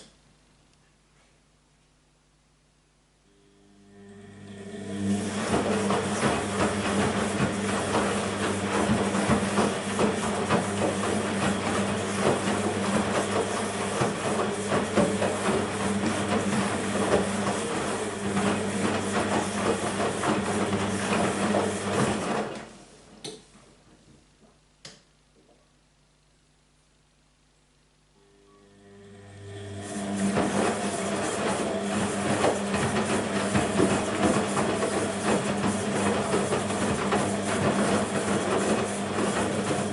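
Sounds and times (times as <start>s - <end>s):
washing machine water rushing: 4.0s - 22.8s, 29.1s - 39.9s.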